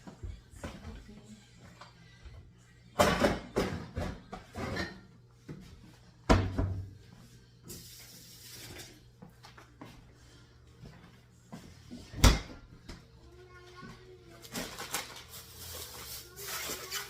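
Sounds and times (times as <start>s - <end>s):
kitchen knocks and clunks: 3.0s - 5.1s, 6.2s - 6.9s, 12.1s - 12.7s.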